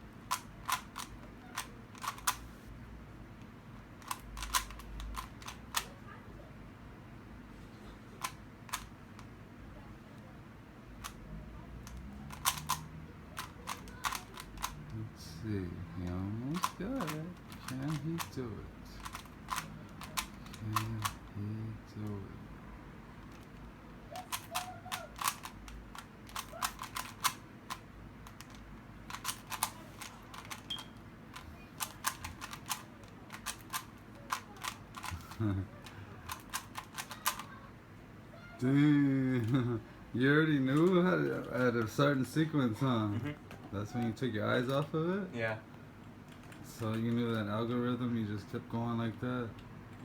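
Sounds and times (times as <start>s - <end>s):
puzzle cube clicking: 0.3s - 2.6s, 4.0s - 5.9s, 8.2s - 9.3s, 11.8s - 15.0s, 16.0s - 18.4s, 19.0s - 21.3s, 24.3s - 37.6s.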